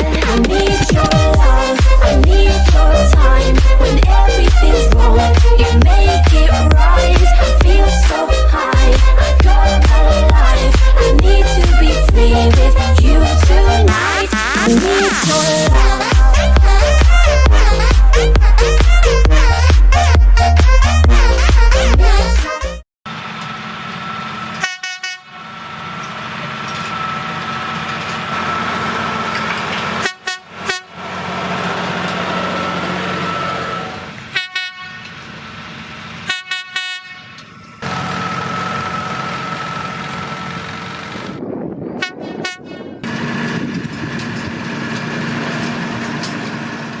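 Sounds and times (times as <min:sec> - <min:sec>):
tractor engine running: 0:00.0 - 0:22.4, 0:23.1 - 0:47.0
fanfare air horn blasts: 0:00.6 - 0:05.0, 0:13.9 - 0:22.8, 0:24.6 - 0:25.3, 0:30.0 - 0:31.0, 0:34.3 - 0:35.1, 0:36.2 - 0:37.4, 0:42.0 - 0:42.8.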